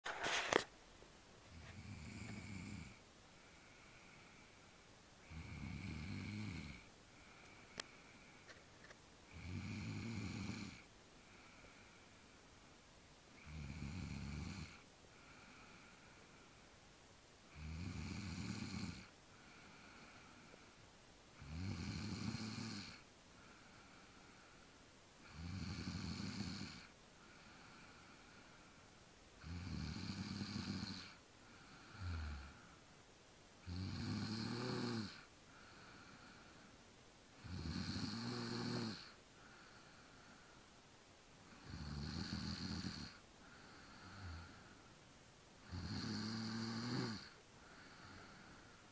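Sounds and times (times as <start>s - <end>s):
person snoring: 1.5s - 3.0s, 5.2s - 8.3s, 9.3s - 11.9s, 13.4s - 16.0s, 17.5s - 20.6s, 21.4s - 24.6s, 25.2s - 28.6s, 29.4s - 32.8s, 33.6s - 36.6s, 37.4s - 40.4s, 41.5s - 44.8s, 45.6s - 48.8s.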